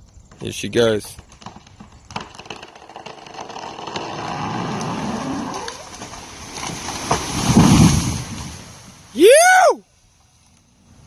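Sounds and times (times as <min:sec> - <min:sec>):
tree crashing to ground: 0:00.3 - 0:09.0
branches swishing through air: 0:04.6 - 0:09.0.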